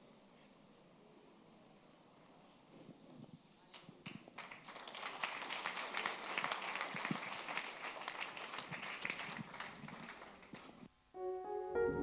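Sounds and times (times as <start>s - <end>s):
congregation applauding: 4.0s - 10.9s.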